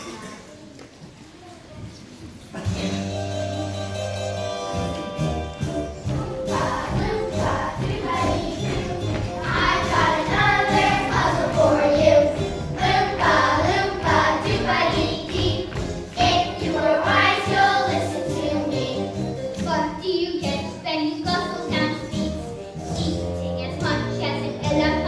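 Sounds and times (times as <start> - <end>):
children singing: 6.0 - 20.6.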